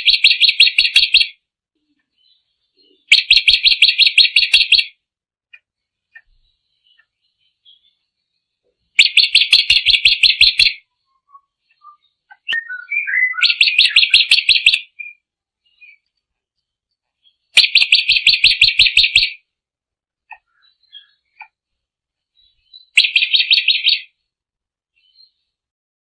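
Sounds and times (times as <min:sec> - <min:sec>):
drongo singing repeated notes: 0:00.0 - 0:19.6, 0:20.2 - 0:25.6
bird chirps and whistles: 0:09.0 - 0:16.0, 0:17.2 - 0:19.4, 0:22.4 - 0:24.1.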